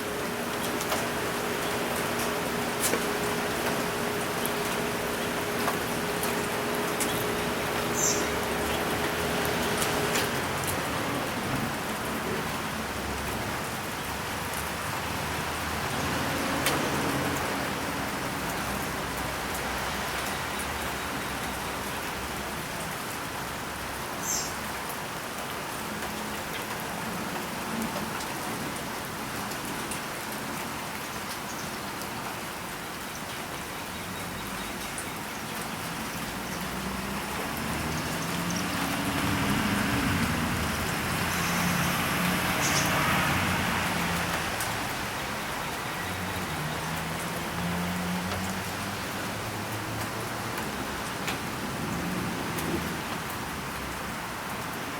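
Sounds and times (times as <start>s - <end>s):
steady rain falling: 0.0s - 54.9s.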